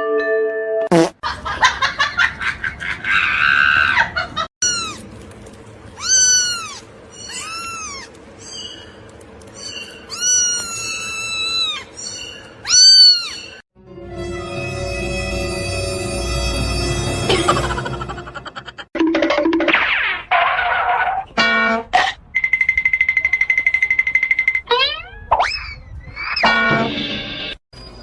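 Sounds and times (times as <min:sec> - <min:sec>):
cat meowing: 0:04.6 - 0:05.0, 0:06.0 - 0:08.2, 0:10.1 - 0:11.9, 0:12.6 - 0:13.6.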